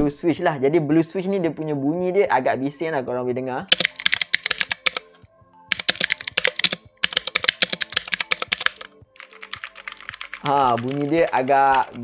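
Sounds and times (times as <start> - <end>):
mechanical keyboard typing: 3.7 - 5.1, 5.7 - 12.0.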